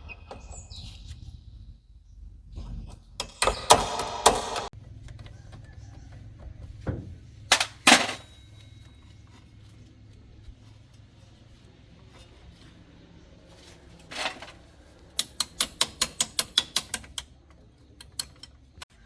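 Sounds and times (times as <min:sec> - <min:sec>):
sharp knocks: 0:03.2 - 0:04.7.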